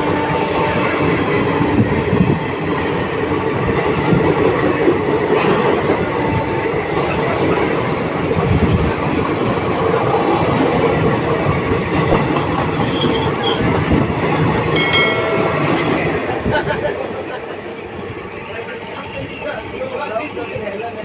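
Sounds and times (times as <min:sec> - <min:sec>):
train wheels rumbling on rails: 0:00.0 - 0:21.0
high wheel squeals: 0:07.8 - 0:09.9, 0:12.7 - 0:13.8.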